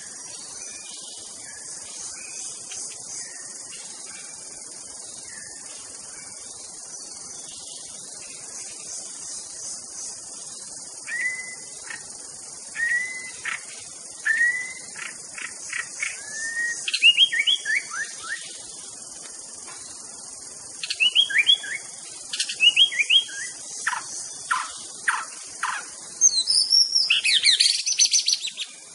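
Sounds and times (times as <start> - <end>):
crickets chirring: 0.0 - 28.9
bird singing slurred whistles: 11.1 - 11.7, 12.8 - 13.6, 14.2 - 14.9, 16.0 - 18.6, 20.8 - 28.7.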